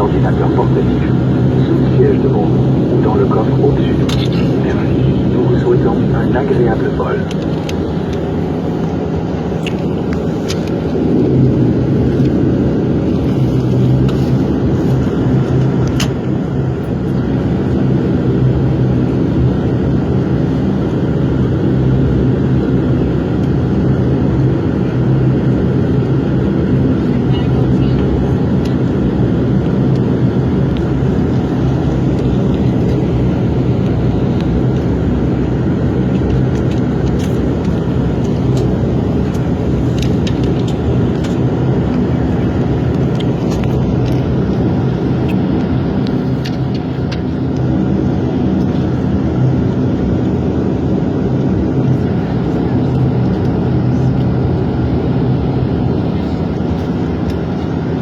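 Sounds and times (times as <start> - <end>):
turboprop cabin drone: 0.0 - 58.0.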